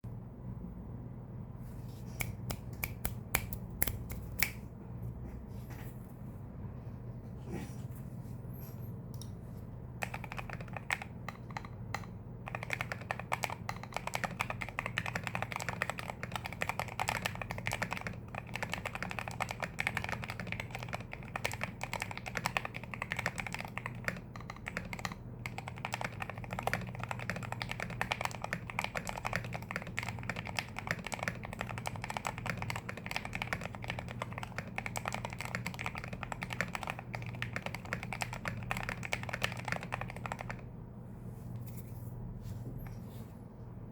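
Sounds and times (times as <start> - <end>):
mechanical keyboard typing: 10.0 - 40.7.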